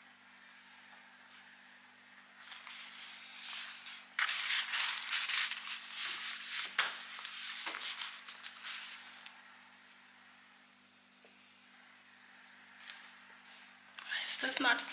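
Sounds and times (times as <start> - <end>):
plastic and cardboard rustling: 2.4 - 9.3.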